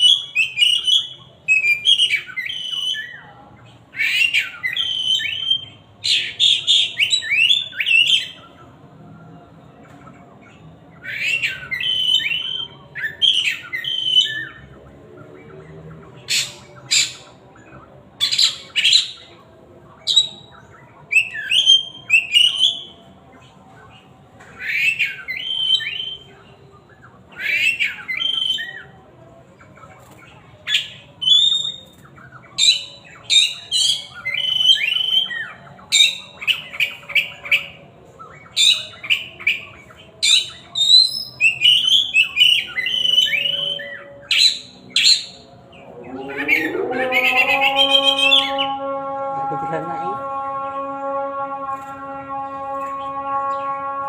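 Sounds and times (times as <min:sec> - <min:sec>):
bird singing whistles: 0:04.0 - 0:08.5, 0:11.0 - 0:14.6, 0:26.9 - 0:28.9, 0:30.7 - 0:37.6, 0:38.3 - 0:45.4.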